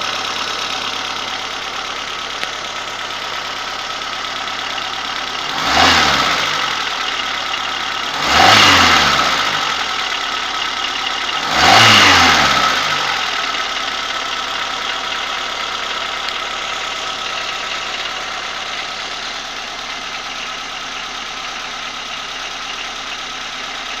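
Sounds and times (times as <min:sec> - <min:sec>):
engine idling and revving: 0:00.0 - 0:24.0.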